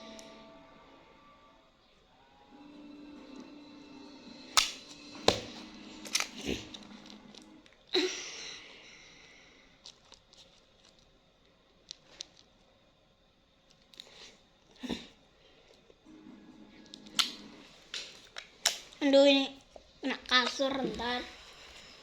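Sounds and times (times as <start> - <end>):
slime popping and snapping: 4.6 - 6.6, 17.0 - 19.0.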